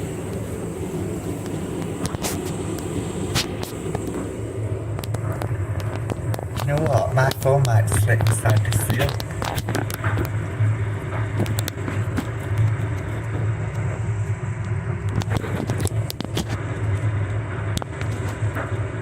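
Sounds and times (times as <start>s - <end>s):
washing machine drum spinning: 0.0s - 14.1s.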